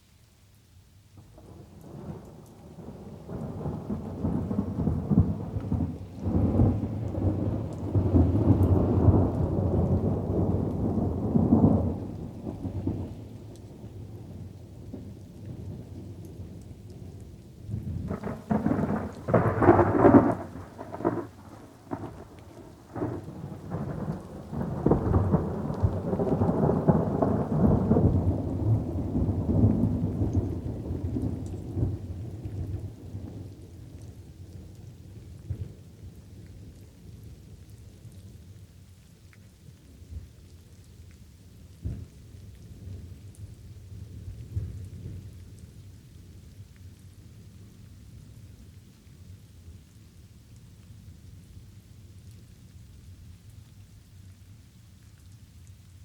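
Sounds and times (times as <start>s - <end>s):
light rain falling: 0.0s - 56.0s
thunder rumbling: 1.5s - 13.2s, 17.6s - 33.6s.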